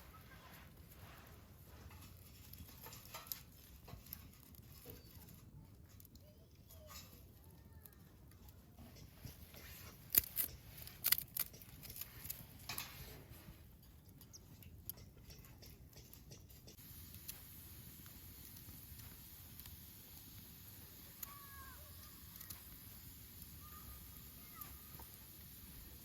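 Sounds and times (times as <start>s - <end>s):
campfire crackling and popping: 1.9s - 4.7s, 9.0s - 13.1s, 14.8s - 26.0s.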